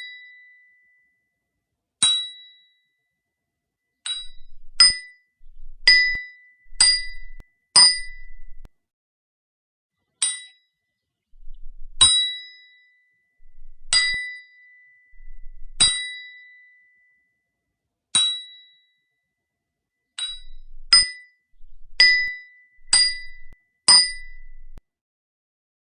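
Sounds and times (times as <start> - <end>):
hammer striking steel chisel: 5.8 - 8.7, 13.5 - 14.2, 20.2 - 21.2, 22.0 - 24.8.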